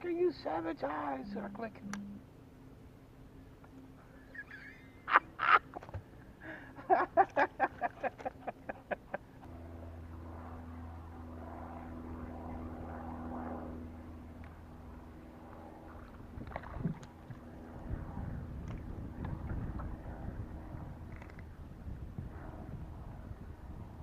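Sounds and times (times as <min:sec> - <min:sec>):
boat motor humming: 0:01.1 - 0:02.4.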